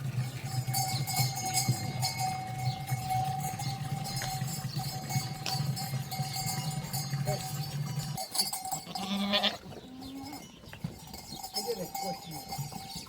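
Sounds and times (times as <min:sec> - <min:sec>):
animal bells clinking: 0:00.0 - 0:13.0
sheep bleating: 0:08.7 - 0:10.5.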